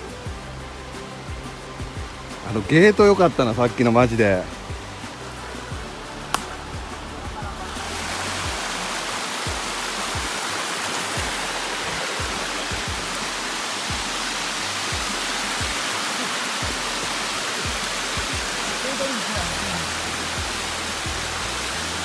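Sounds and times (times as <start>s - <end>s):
stream water rushing: 0.0s - 22.0s.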